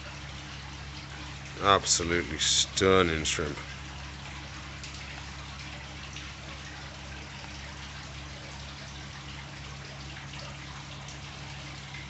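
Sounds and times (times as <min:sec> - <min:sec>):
aquarium water bubbling: 0:00.0 - 0:12.0
low steady hum: 0:00.0 - 0:12.0.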